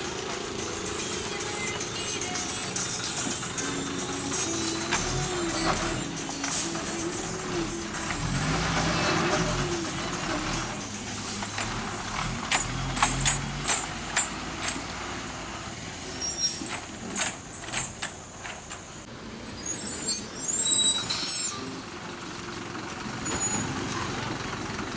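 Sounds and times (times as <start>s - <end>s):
knocks and rattles: 0.0s - 15.2s, 16.6s - 19.0s
brakes squealing: 0.0s - 24.9s
heavy vehicles on rough road: 0.0s - 24.9s.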